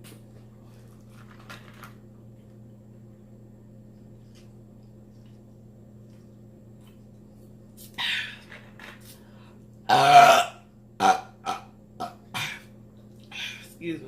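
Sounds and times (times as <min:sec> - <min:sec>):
low steady hum: 0:00.0 - 0:14.0
woman burping: 0:09.9 - 0:12.7.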